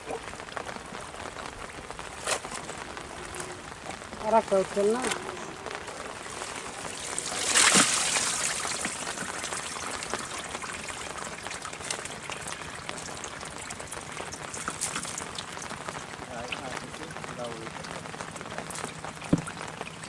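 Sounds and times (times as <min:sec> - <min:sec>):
small water drips: 0:00.0 - 0:20.0
water trickling: 0:00.0 - 0:20.0
loud water splash: 0:05.9 - 0:17.7.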